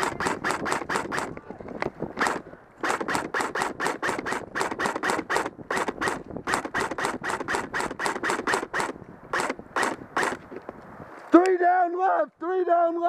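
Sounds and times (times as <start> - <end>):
rapid footsteps on rough ground: 0.0 - 9.4.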